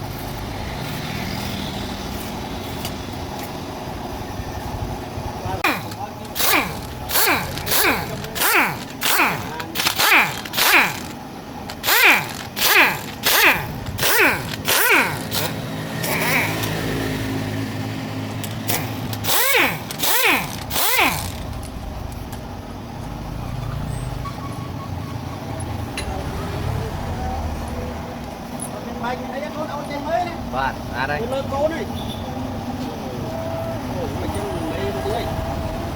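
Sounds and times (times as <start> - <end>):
hand tool scraping: 5.6 - 16.8, 18.4 - 21.7.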